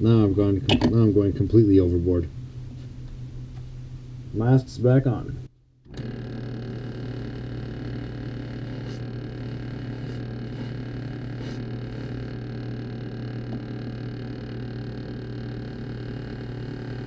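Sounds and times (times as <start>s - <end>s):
power tool motor humming: 5.9s - 17.0s.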